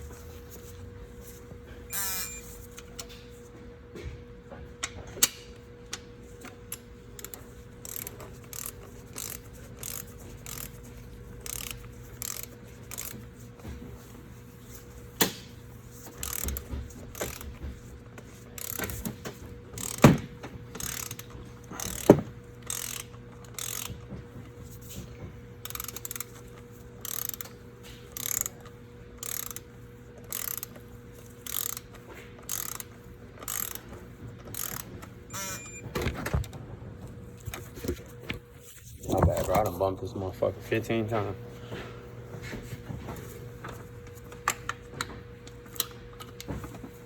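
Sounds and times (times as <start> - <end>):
ratchet wrench clicking: 1.9 - 3.1, 6.7 - 13.3, 16.1 - 17.6, 18.6 - 19.1, 19.8 - 24.0, 25.6 - 33.9, 34.5 - 35.7.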